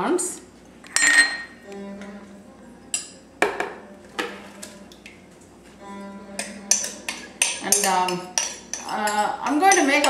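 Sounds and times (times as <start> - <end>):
utensil clinking against bowl: 0.8 - 2.1, 6.3 - 10.0.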